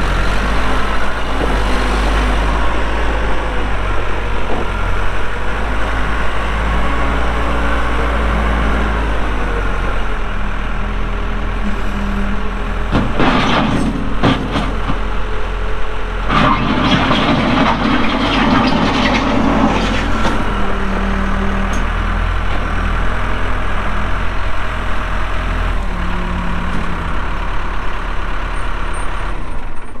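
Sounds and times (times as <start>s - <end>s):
diesel engine running: 0.0s - 30.0s
rough noisy machine bursts: 25.7s - 29.3s.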